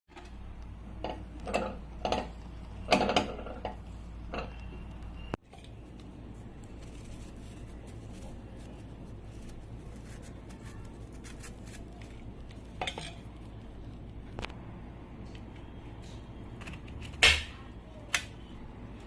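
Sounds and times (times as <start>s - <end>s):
kitchen utensils clinking: 1.0s - 4.6s, 12.6s - 13.5s.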